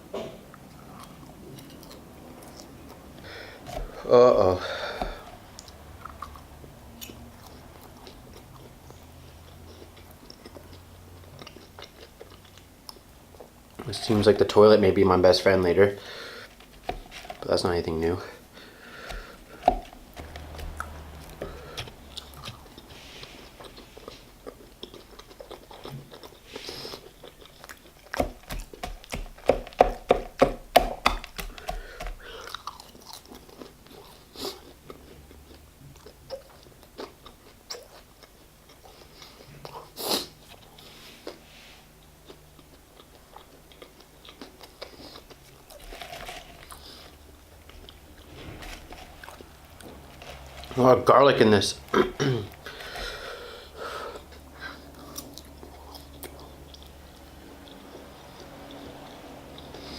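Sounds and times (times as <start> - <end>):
person biting and chewing: 0.6 - 13.6, 18.3 - 41.4, 42.0 - 50.8.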